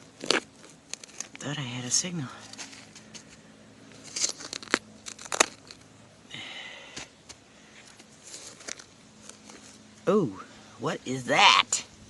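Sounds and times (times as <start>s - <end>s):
hand tool digging in soil: 0.0s - 5.8s, 7.8s - 9.8s.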